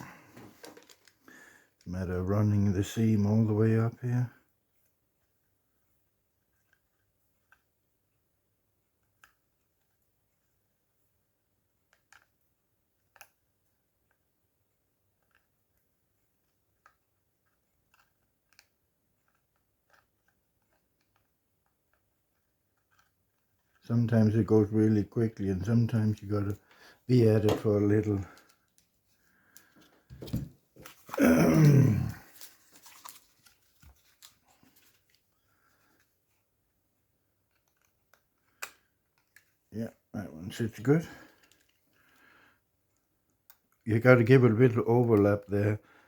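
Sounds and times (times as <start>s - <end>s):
falling pitched vocal sound: 31.2s - 32.2s.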